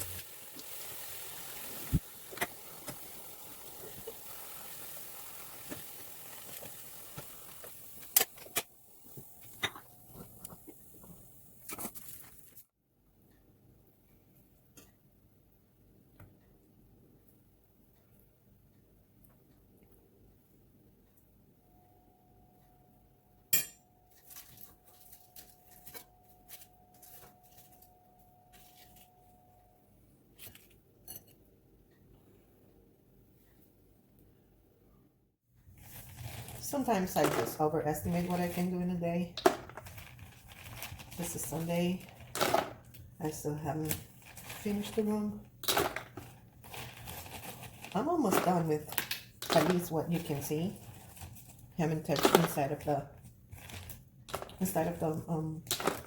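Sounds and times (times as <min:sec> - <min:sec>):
faint steady hum: 0:07.4 - 0:51.9
household items clinking: 0:35.9 - 0:56.0
items clattering and tapping: 0:37.1 - 0:38.5, 0:42.1 - 0:43.0, 0:45.6 - 0:52.8, 0:53.6 - 0:54.7, 0:55.7 - 0:56.0.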